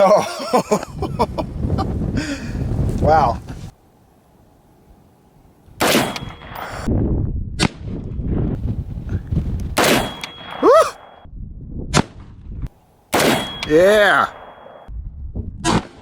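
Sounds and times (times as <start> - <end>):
gunshots with echo: 5.8 - 6.8, 9.8 - 10.6, 13.1 - 13.7
metallic ring: 10.0 - 11.3, 13.2 - 14.9.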